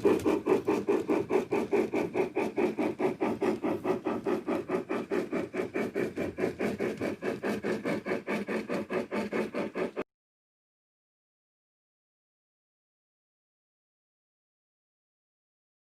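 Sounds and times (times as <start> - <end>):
steam locomotive chuffs: 0.0 - 10.0.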